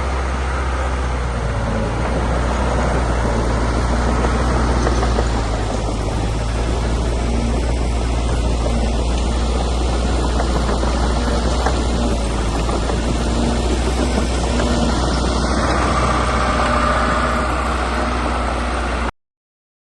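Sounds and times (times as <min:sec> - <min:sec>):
diesel machine engine running: 0:00.0 - 0:19.1.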